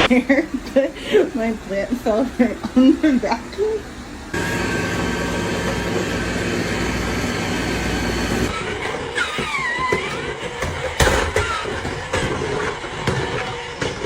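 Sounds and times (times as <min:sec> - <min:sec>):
robot vacuum whirring: 0:03.6 - 0:14.0.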